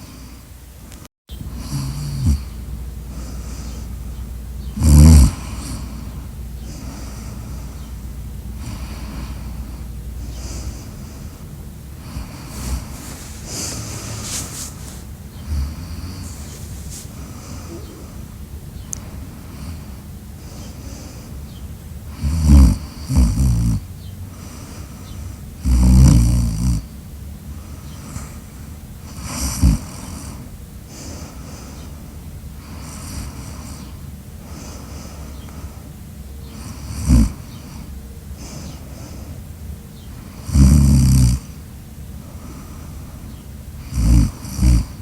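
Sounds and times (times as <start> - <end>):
quiet breathing: 0.0 - 25.8, 26.8 - 45.0
loud snoring: 1.4 - 3.9, 4.6 - 7.9, 8.5 - 11.4, 12.0 - 18.2, 22.1 - 23.9, 25.6 - 26.9, 29.1 - 30.4, 36.6 - 37.8, 40.3 - 41.6, 43.8 - 45.0
sharp snorts: 1.5 - 3.9, 4.7 - 7.9, 12.0 - 18.3, 22.1 - 23.8, 36.5 - 39.2, 40.3 - 41.5, 43.8 - 45.0.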